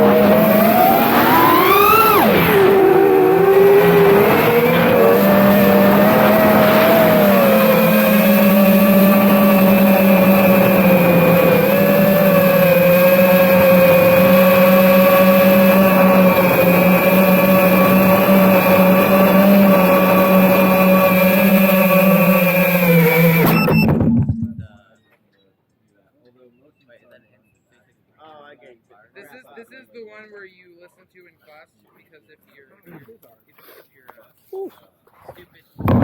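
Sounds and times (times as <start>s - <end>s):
drone motors and propellers whining: 0.0s - 24.7s.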